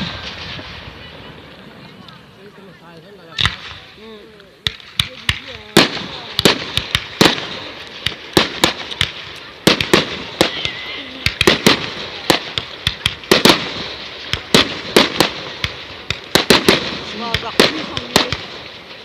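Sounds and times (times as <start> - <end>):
distant explosions: 0.0 - 2.4, 4.6 - 19.0
fireworks bangs: 0.0 - 19.0
fireworks crackling: 0.0 - 19.0.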